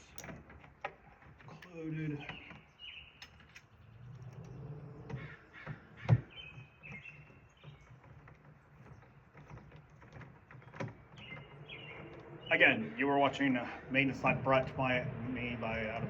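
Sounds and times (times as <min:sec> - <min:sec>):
hardware clicks and knocks: 0:00.0 - 0:03.8, 0:05.1 - 0:12.4
harsh bird calls: 0:01.6 - 0:09.2, 0:10.6 - 0:13.9.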